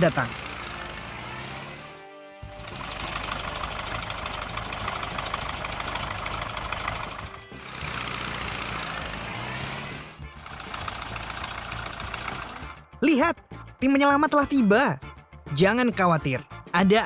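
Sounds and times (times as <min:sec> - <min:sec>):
truck engine running: 0:00.0 - 0:13.0
background music: 0:00.0 - 0:17.0.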